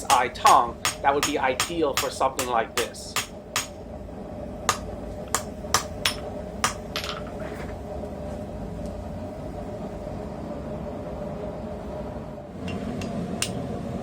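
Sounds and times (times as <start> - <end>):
hammer striking steel on anvil: 0.0 - 3.8, 4.7 - 6.9, 13.4 - 13.6
steady hum: 0.0 - 14.0.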